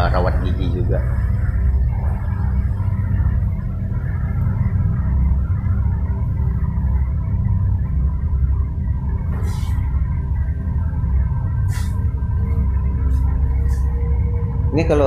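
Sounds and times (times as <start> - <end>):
faint sustained tones: 0.0 - 15.0
low droning rumble: 0.0 - 15.0
brief hissing sounds: 11.7 - 12.0.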